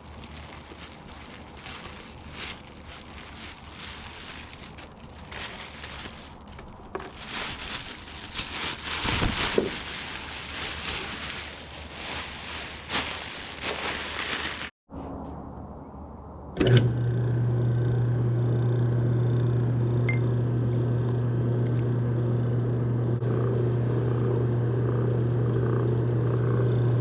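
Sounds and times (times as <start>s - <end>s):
faint motor hum: 15.1s - 27.0s.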